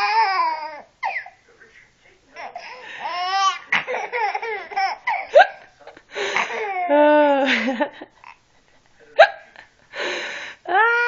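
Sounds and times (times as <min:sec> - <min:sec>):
baby laughing: 0:02.4 - 0:07.0.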